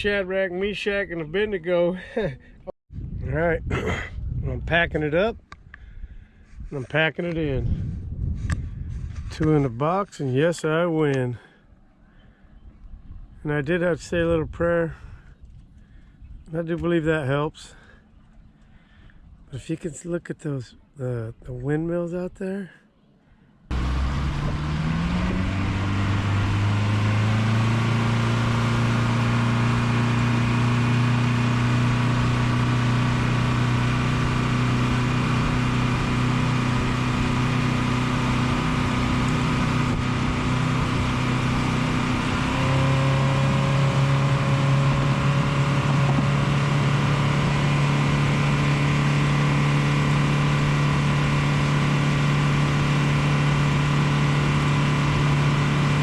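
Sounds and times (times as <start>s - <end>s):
boat motor running: 23.7s - 56.0s.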